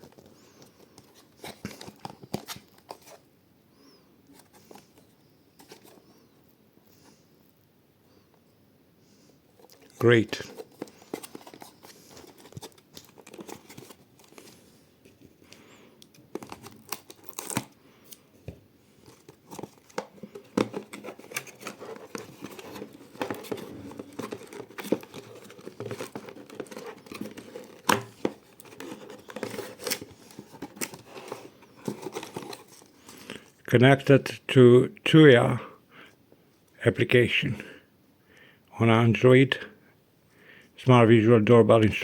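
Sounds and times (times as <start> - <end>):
packaging tearing and crinkling: 10.5 - 14.6, 16.1 - 17.8, 19.0 - 32.9.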